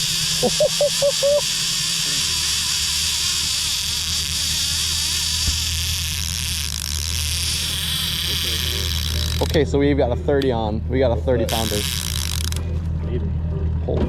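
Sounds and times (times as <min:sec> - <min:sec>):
fishing reel drag buzzing: 0:00.0 - 0:09.7, 0:11.5 - 0:12.6
boat motor humming: 0:00.0 - 0:14.0.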